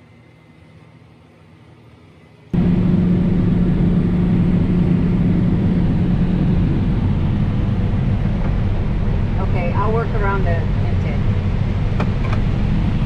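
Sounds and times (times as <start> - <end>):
steady hum: 0.0 - 13.0
diesel machine rumbling: 2.6 - 13.0.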